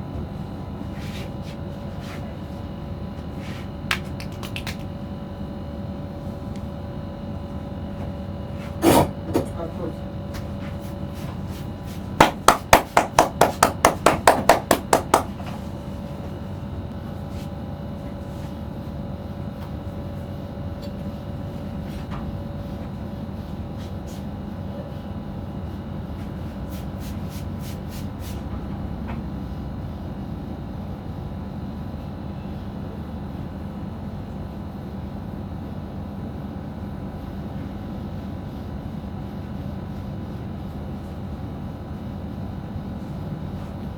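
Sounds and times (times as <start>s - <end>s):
steady background hum: 0.0s - 43.9s
hollow percussive massage strikes: 12.2s - 15.4s.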